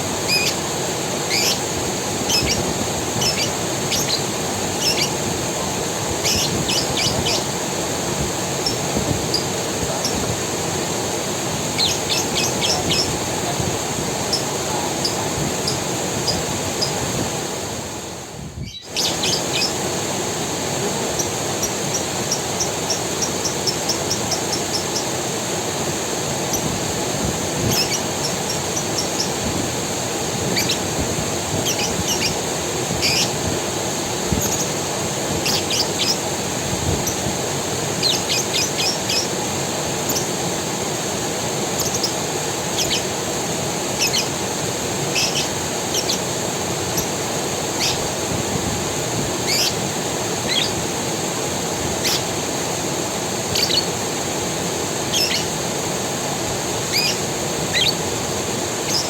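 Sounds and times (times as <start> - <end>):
small birds chirping: 0.0 - 7.6, 8.5 - 10.3, 11.6 - 17.2, 18.6 - 19.9, 21.0 - 25.2, 27.6 - 29.7, 30.3 - 33.5, 34.2 - 40.4, 41.7 - 43.2, 43.8 - 44.4, 45.0 - 48.1, 49.4 - 50.8, 51.9 - 52.4, 53.4 - 54.0, 55.0 - 55.6, 56.8 - 58.1
creek running: 0.0 - 59.0.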